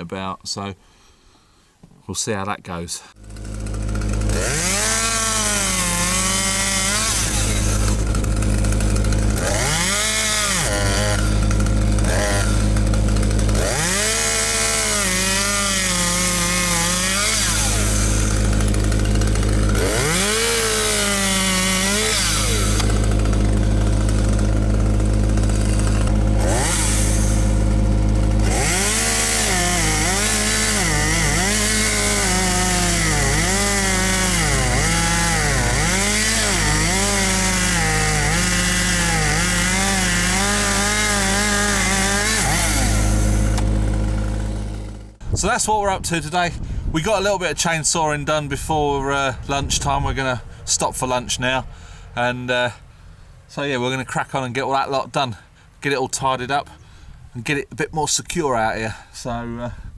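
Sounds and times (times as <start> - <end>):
chainsaw revving: 3.2 - 46.4.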